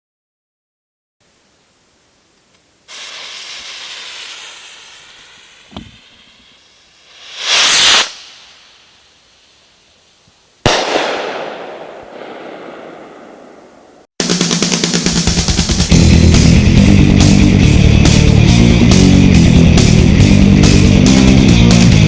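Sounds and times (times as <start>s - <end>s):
firework rocket hiss: 2.8s - 11.5s
loud firework burst: 2.9s - 9.6s, 10.6s - 15.3s
firework pop: 5.5s - 6.4s.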